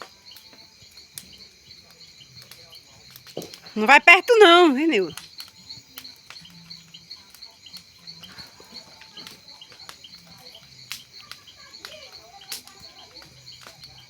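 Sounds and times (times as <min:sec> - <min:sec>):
crickets chirping: 0:00.0 - 0:14.0
faint voices: 0:03.7 - 0:05.1.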